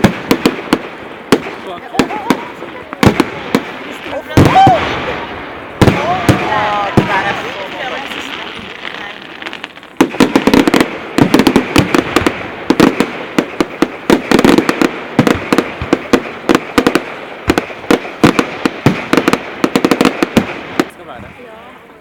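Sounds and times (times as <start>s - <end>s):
fireworks bangs and crackling: 0.0s - 22.0s.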